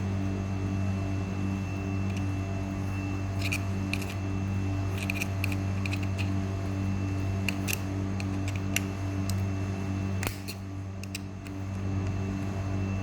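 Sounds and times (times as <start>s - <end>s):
steady hum: 0.0s - 13.0s.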